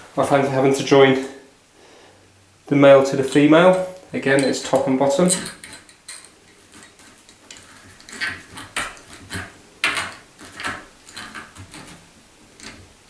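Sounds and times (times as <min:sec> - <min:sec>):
small metal parts clicking: 0:03.2 - 0:12.8.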